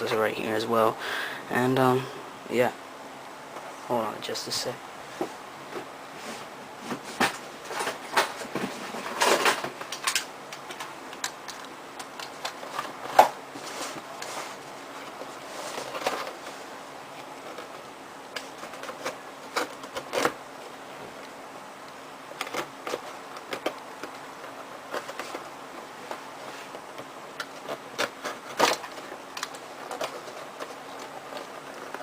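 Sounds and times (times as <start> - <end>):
faint steady hum: 0.0 - 32.0
packaging clicks taps and rustles: 7.3 - 14.3, 15.0 - 32.0.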